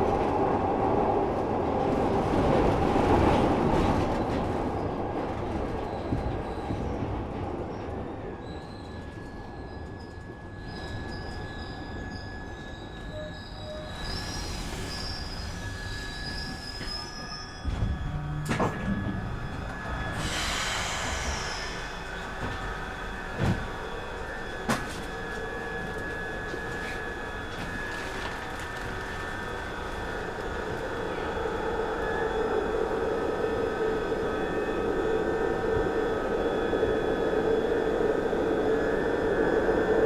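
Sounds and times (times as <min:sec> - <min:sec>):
subway train whine and rumble: 0:00.0 - 0:40.0
high wheel squeals: 0:08.5 - 0:27.9.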